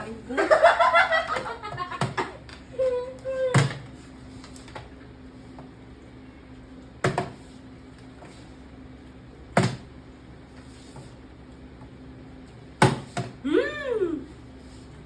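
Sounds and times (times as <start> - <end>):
person exclaiming: 13.4 - 14.3.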